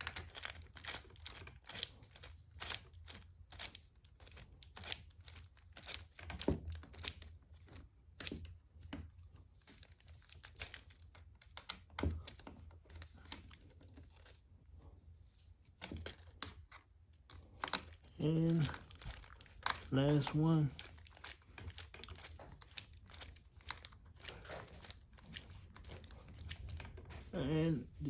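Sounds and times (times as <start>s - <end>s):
plastic tool parts clicking: 15.8s - 27.3s.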